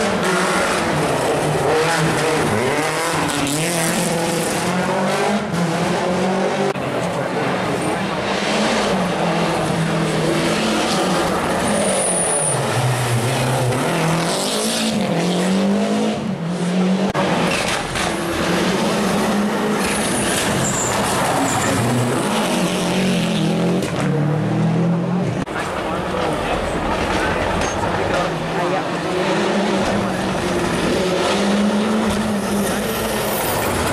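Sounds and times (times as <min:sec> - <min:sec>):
rally car engine revving: 0:00.0 - 0:33.9
tyre squeals: 0:19.8 - 0:22.2.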